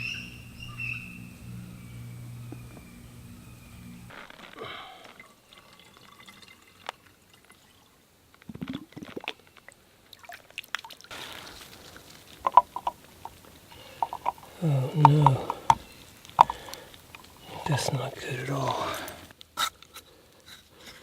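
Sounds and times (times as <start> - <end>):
liquid pouring: 4.1 - 17.8
cooking gear clicks and knocks: 11.4 - 17.6.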